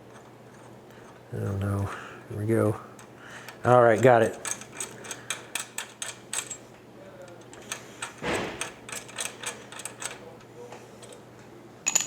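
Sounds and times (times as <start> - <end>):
allen wrench clicking on metal: 3.9 - 6.6, 7.3 - 10.2.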